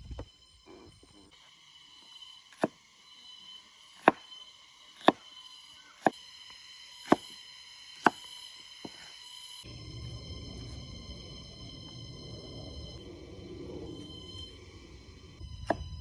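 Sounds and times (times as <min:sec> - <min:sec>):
knife chopping on cutting board: 0:05.0 - 0:05.2, 0:07.1 - 0:07.3.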